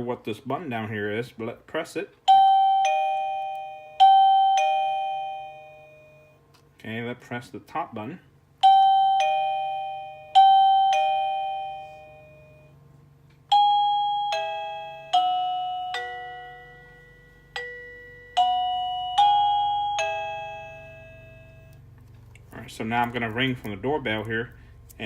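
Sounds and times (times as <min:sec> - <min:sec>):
doorbell bell-like tune: 0:02.3 - 0:06.4, 0:08.6 - 0:21.9
doorbell ding-dong chime: 0:02.3 - 0:06.4, 0:08.6 - 0:12.8, 0:13.5 - 0:21.9.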